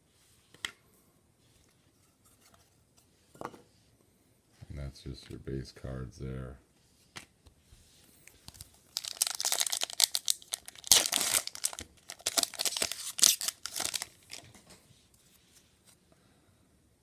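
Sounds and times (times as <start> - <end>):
foil wrapper tearing and crinkling: 8.5 - 14.6.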